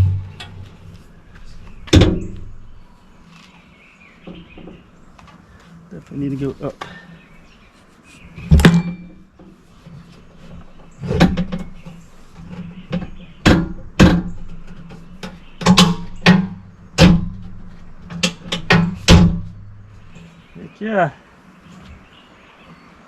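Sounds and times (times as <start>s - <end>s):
metal door and latch knocks: 1.9s - 2.6s, 12.9s - 19.8s.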